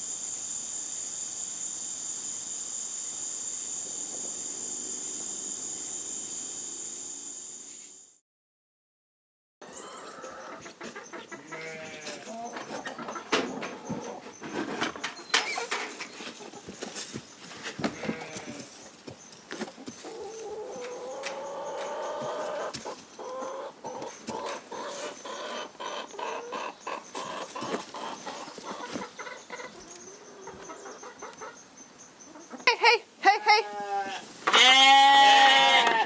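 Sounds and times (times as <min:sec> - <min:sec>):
farm animals calling: 0:09.6 - 0:36.0.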